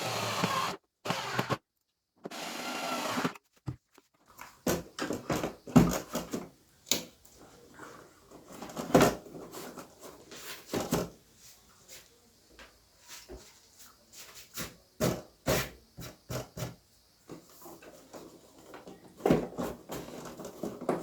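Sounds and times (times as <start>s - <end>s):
electric screwdriver driving screw: 0.0s - 1.6s, 2.3s - 3.4s
plastic parts knocking and clicking: 4.6s - 7.1s.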